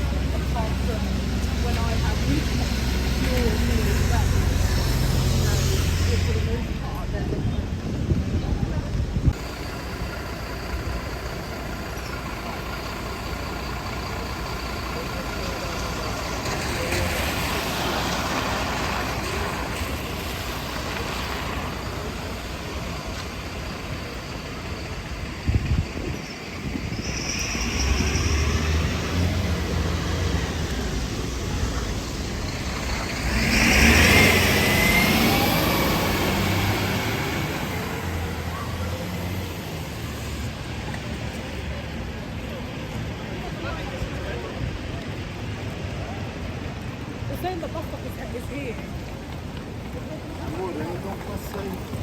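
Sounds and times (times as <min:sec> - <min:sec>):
road vehicles passing: 0:00.0 - 0:52.0.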